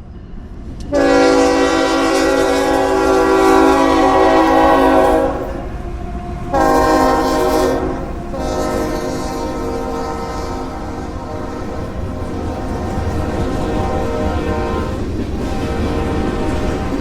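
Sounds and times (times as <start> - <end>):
train rumbling: 0.0 - 17.0
locomotive air horn blasts: 0.9 - 17.0.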